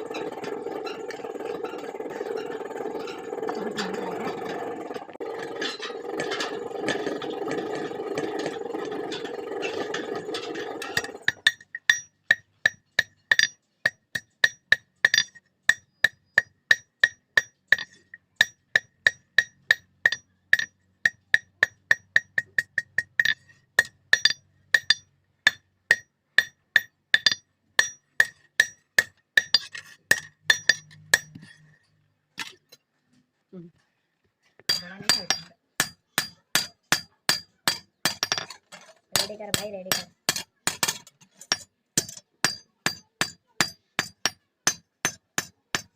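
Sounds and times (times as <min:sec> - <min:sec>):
hammer striking steel on anvil: 0:05.4 - 0:31.5, 0:34.7 - 0:38.6, 0:39.2 - 0:45.9.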